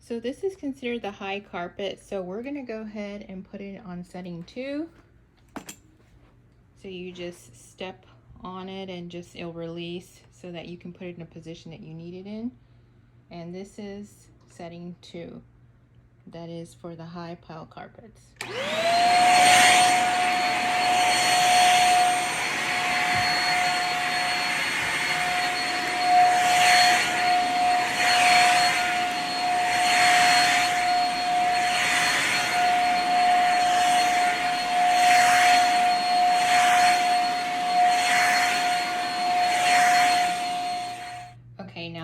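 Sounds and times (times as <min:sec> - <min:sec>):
vacuum cleaner running: 0:18.4 - 0:41.4.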